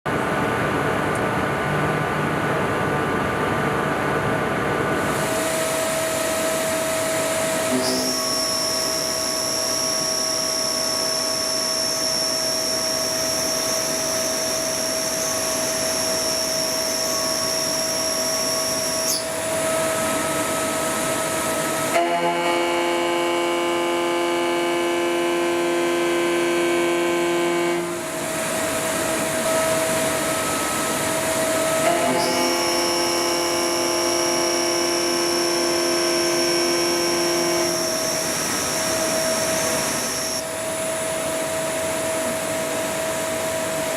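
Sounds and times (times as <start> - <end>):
high machining whine: 3.9 - 43.9
lathe milling steel: 5.1 - 22.0, 27.9 - 43.9.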